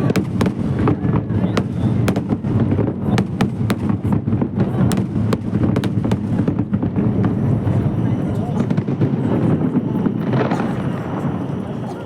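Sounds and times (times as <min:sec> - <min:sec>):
fireworks crackling pops: 0:00.0 - 0:12.0
low din of firework bursts: 0:00.0 - 0:12.0.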